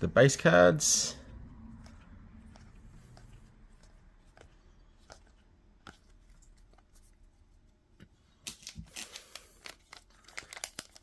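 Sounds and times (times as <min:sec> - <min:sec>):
foil wrapper crinkling: 0:08.5 - 0:11.0.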